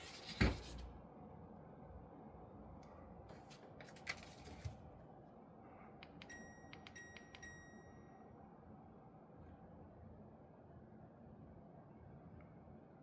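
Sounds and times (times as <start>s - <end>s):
air conditioner electronic beeps: 6.0s - 8.5s.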